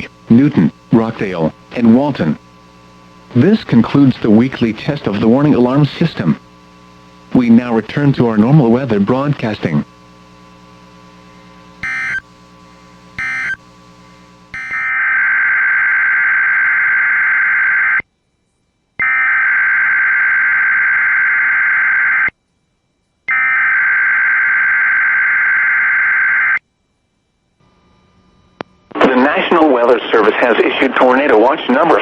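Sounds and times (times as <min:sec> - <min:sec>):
low radio hum: 0:00.0 - 0:32.0
harsh buzzing data screech: 0:11.8 - 0:12.3, 0:13.2 - 0:13.6, 0:14.5 - 0:18.0, 0:19.0 - 0:22.4, 0:23.3 - 0:26.6.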